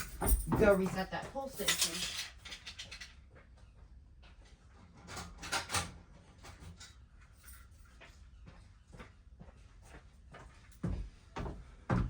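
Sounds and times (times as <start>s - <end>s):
handling clicks and knocks: 0.0s - 3.1s.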